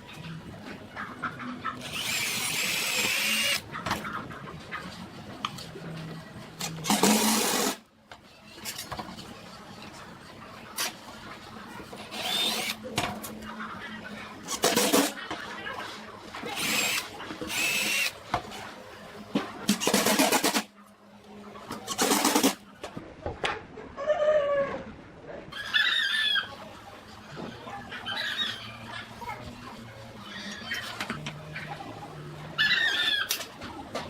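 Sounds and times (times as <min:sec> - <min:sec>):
chickens clucking: 0:00.0 - 0:01.9, 0:03.6 - 0:05.8, 0:12.8 - 0:16.5, 0:22.7 - 0:34.0
power tool running: 0:01.8 - 0:03.6, 0:16.5 - 0:18.1.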